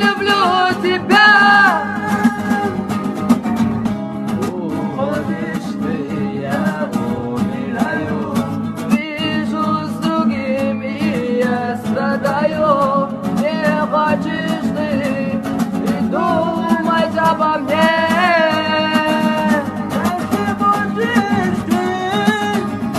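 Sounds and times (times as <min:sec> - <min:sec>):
plucked acoustic guitar: 0:00.0 - 0:22.9
low accompaniment: 0:01.7 - 0:08.6.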